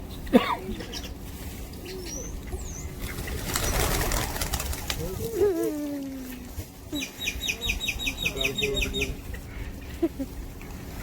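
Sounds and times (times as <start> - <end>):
rustling flurry: 1.1 - 7.0.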